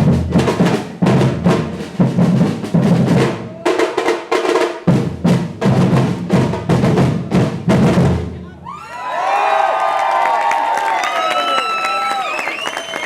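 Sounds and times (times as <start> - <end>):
heavy bass drum strokes: 0.0 - 8.5
percussion ensemble drumming: 0.0 - 8.7.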